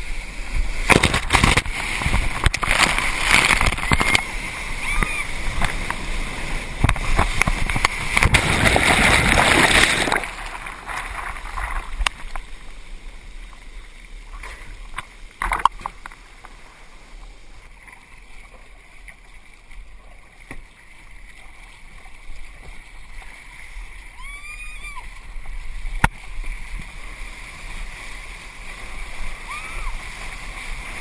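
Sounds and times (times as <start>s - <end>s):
water splash: 0.0s - 12.6s
water washing against kayak hull: 0.0s - 31.0s
whitewater rushing: 0.8s - 12.3s, 26.3s - 31.0s.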